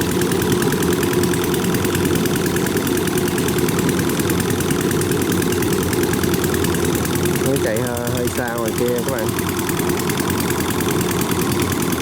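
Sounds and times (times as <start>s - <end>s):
combine harvester diesel engine: 0.0s - 12.0s.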